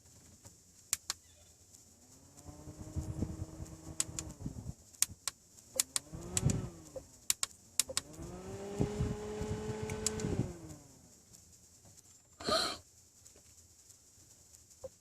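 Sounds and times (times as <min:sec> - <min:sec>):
mini fan motor spinning: 0:01.6 - 0:11.7.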